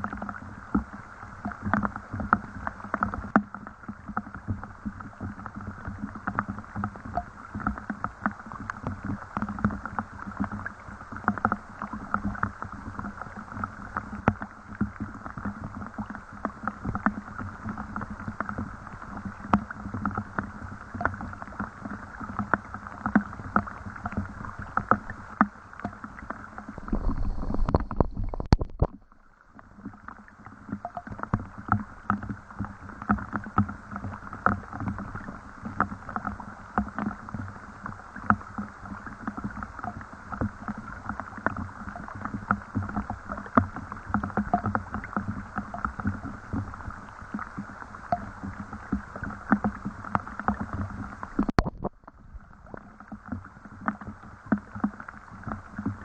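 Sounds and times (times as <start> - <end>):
low rumble: 26.7 - 29.2.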